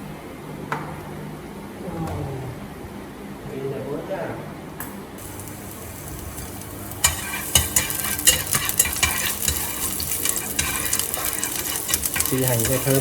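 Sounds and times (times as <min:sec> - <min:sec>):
frying sizzle and crackling pops: 0:04.8 - 0:13.0
onions hitting hot oil: 0:05.2 - 0:13.0.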